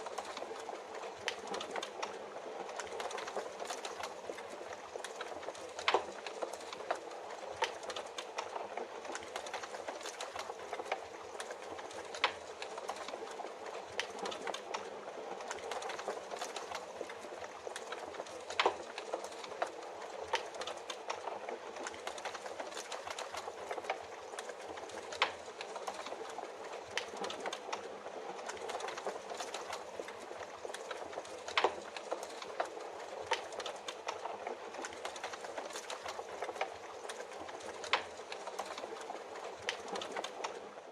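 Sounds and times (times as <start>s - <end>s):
wood fire crackling and popping: 0.0s - 40.9s.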